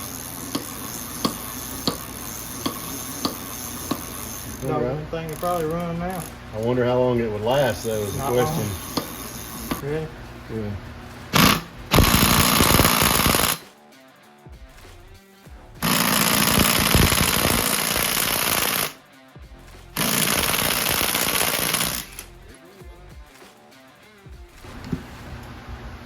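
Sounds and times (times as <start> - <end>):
impact wrench hammering: 0.0 - 6.7, 7.4 - 9.8, 11.3 - 13.7, 15.8 - 19.0, 19.7 - 22.4.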